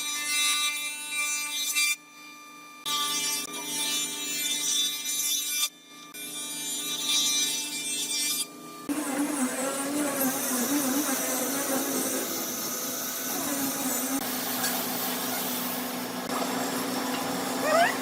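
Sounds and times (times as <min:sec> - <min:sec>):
power tool whirring: 0:08.8 - 0:18.0.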